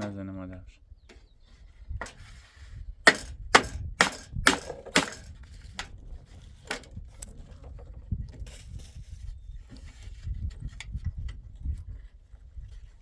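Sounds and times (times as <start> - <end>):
hammer blows on wood: 3.0 - 5.3.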